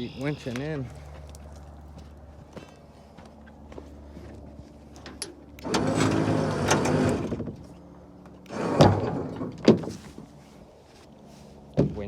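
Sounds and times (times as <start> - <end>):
trailer winch running: 4.9 - 10.5
metal scraping clank: 5.6 - 7.4.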